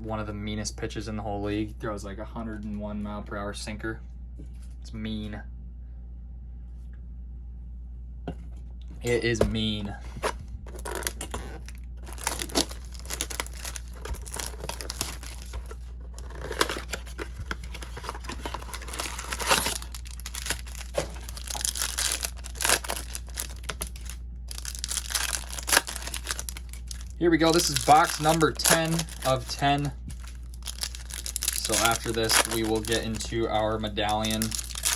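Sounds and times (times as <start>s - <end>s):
low steady hum: 0.0s - 34.9s
wrappers tearing and crinkling: 10.7s - 34.9s.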